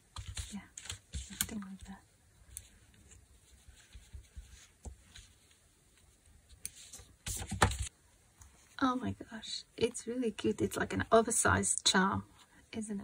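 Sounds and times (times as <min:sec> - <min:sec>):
fabric rustling: 0:02.4 - 0:07.9.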